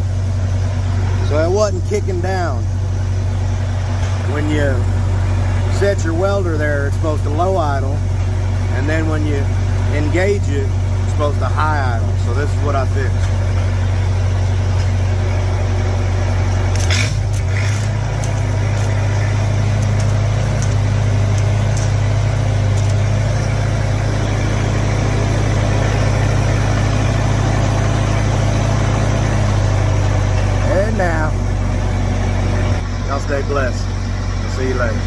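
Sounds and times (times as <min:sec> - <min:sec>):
welder engine running: 0:00.0 - 0:35.0
cluster of clicks: 0:19.7 - 0:22.1, 0:22.7 - 0:23.1.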